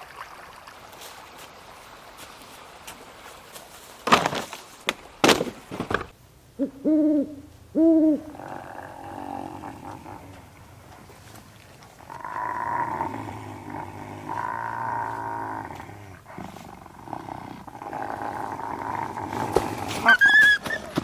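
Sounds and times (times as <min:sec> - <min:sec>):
wolves growling: 0:08.2 - 0:20.2.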